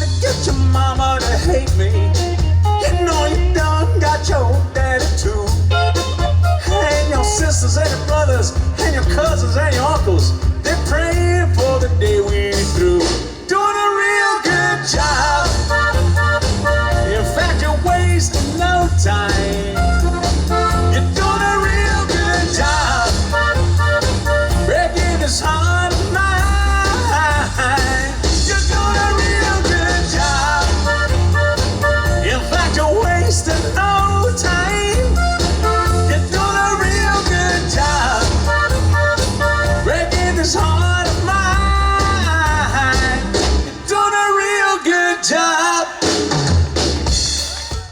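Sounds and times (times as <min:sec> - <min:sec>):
bass: 0:00.0 - 0:45.0, 0:46.0 - 0:47.9
live band playing country music: 0:00.0 - 0:47.9
lead instrument bending notes: 0:19.0 - 0:28.0.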